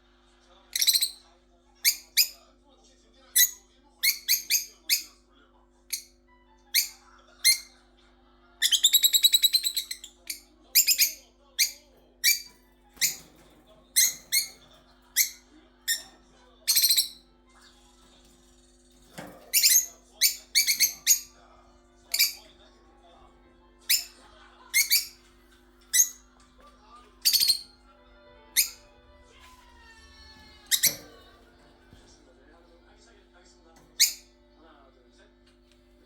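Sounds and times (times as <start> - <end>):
budgerigars chirping: 19.5 - 21.3, 24.8 - 25.2.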